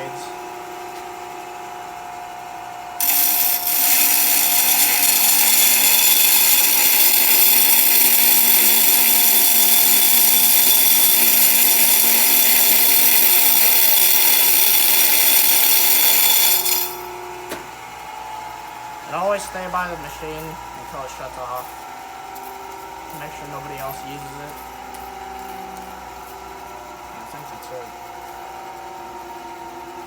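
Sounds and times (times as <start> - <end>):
bench grinder motor humming: 3.0 - 17.4.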